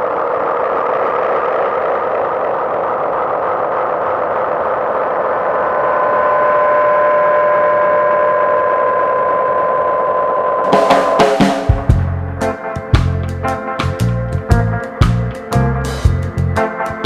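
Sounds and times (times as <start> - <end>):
steady held tone: 0.0 - 17.0
synthesizer drone: 0.0 - 17.0.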